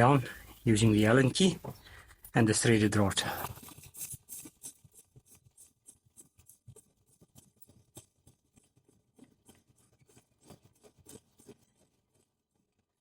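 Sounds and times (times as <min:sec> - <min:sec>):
allen key clicking and scraping: 0:03.5 - 0:11.6.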